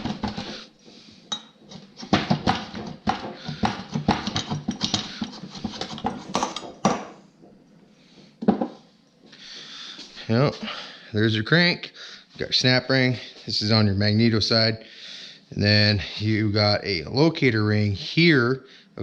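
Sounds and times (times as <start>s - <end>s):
metal parts and tools clattering: 1.2s - 7.2s.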